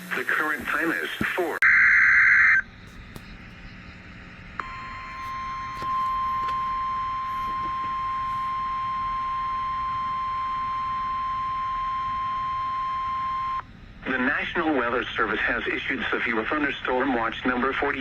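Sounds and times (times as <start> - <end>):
radio reception hiss: 0.0 - 8.8, 14.0 - 18.0
steady high alarm beep: 1.6 - 13.7.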